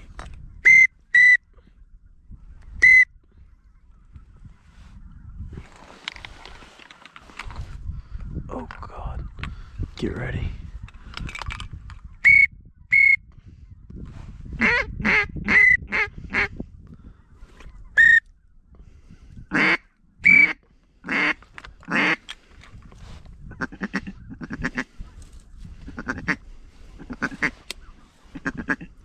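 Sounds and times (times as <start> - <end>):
duck quacking: 19.5 - 22.2, 23.6 - 24.9, 25.9 - 26.4, 27.0 - 27.6, 28.3 - 28.9.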